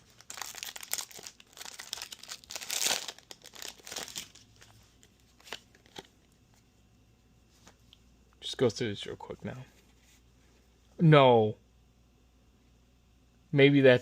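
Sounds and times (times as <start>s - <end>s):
foil wrapper crinkling and tearing: 0.0s - 4.7s.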